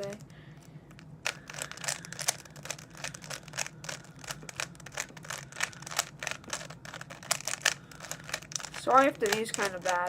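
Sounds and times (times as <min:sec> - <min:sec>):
puzzle cube layers clicking: 0:01.3 - 0:10.0.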